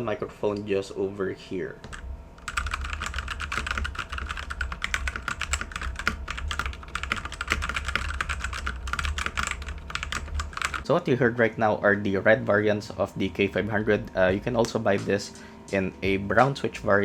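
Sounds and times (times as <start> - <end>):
fast mechanical keyboard typing: 2.4 - 10.8.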